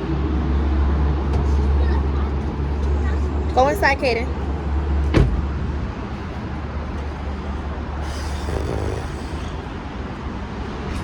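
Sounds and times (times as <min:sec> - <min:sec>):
car rumble inside cabin: 0:00.9 - 0:11.0
loud hiss: 0:08.0 - 0:09.7.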